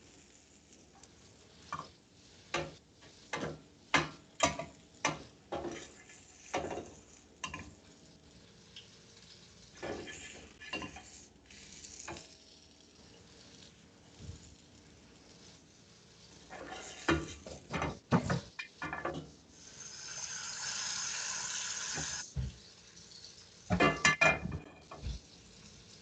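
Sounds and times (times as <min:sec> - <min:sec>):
chicken frying sizzle: 0:00.0 - 0:26.0
utensils knocking against pots: 0:02.5 - 0:05.9, 0:23.7 - 0:25.1
utensils scraping: 0:09.8 - 0:12.3, 0:16.4 - 0:17.6.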